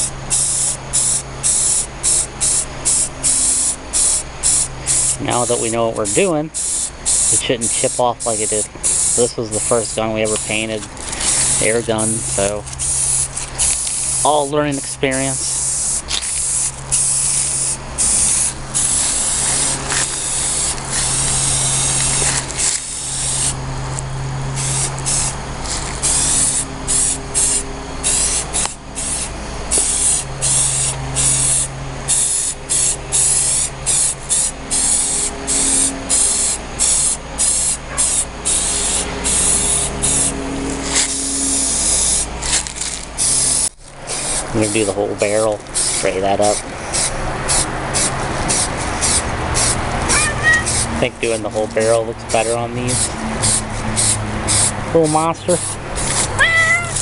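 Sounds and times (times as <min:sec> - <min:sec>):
spray paint hissing: 0:00.0 - 0:57.0.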